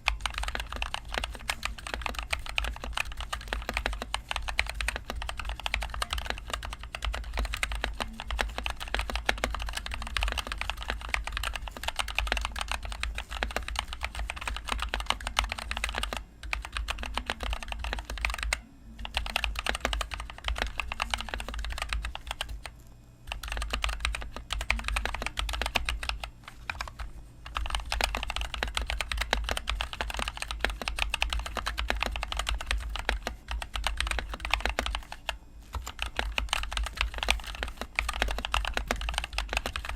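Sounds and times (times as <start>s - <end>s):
mechanical keyboard typing: 0.0s - 22.7s, 23.3s - 39.9s.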